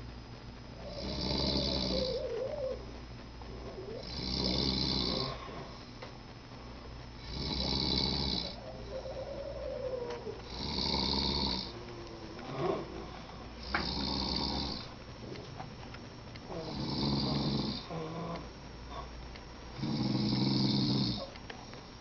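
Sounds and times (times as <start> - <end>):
quiet breathing: 0.0 - 22.0
person snoring: 0.8 - 2.8, 3.6 - 5.9, 7.2 - 14.9, 16.5 - 19.2, 19.8 - 21.3.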